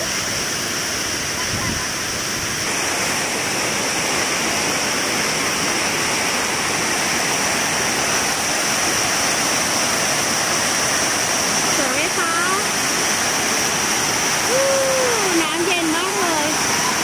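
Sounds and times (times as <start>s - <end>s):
waterfall rushing over rocks: 0.0s - 17.0s.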